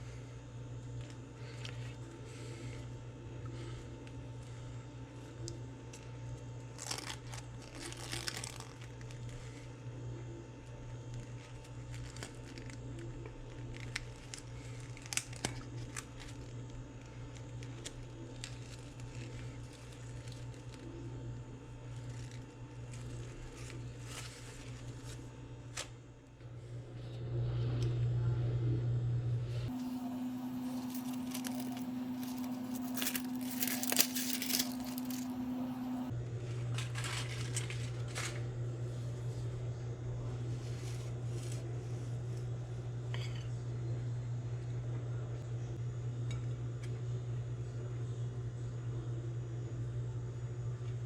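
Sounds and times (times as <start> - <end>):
crinkling and rustling: 5.9 - 9.8, 11.1 - 21.0, 21.8 - 26.0, 29.7 - 38.5
low hum: 26.4 - 44.0.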